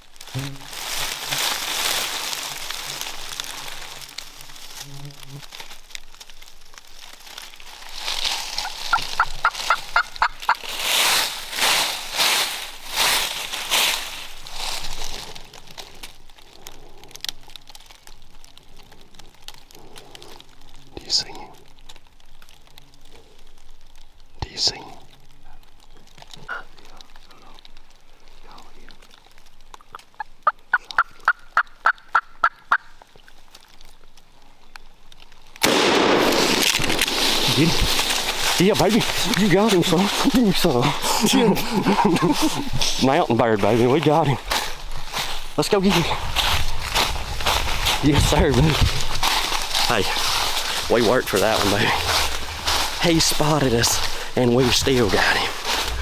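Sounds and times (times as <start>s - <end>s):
turkey gobbling: 8.6s - 10.7s, 30.1s - 32.9s
turkey yelping: 8.6s - 10.7s, 30.1s - 32.9s.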